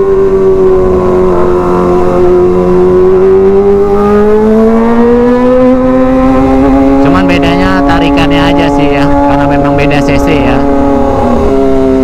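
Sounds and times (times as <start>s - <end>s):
motorcycle engine at high revs: 0.0s - 12.0s.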